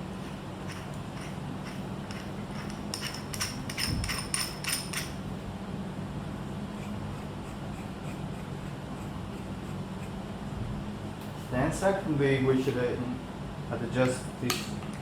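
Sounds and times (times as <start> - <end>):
metal parts clinking and ringing: 2.1 - 5.2.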